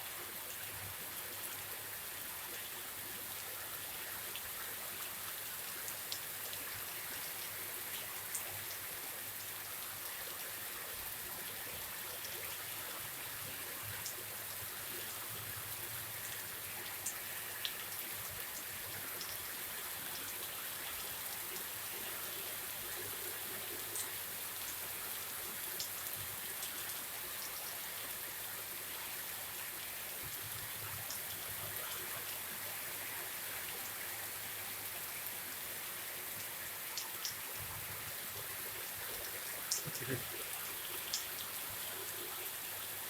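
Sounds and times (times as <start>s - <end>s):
water drips ticking: 39.6s - 41.4s
heavy rain hissing: 39.7s - 40.4s.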